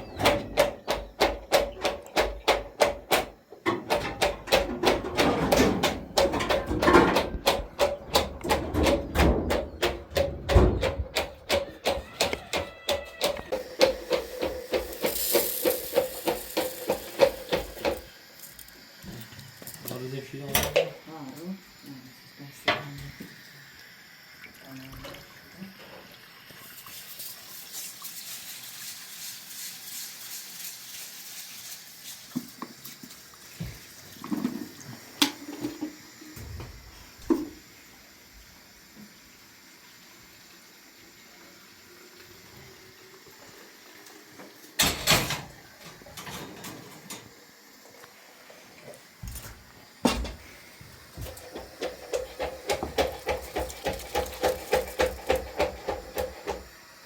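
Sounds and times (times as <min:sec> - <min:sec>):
knocks and clatter: 0:00.0 - 0:18.1
water running: 0:11.0 - 0:57.0.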